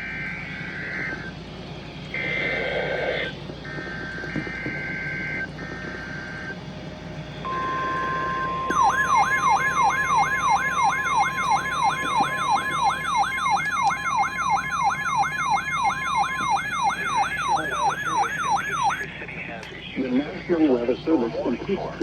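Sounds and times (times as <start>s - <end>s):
steady alarm tone: 7.4s - 19.1s
electronic siren alarm sweeping down: 7.5s - 19.0s
warbling two-tone data burst: 8.6s - 19.0s.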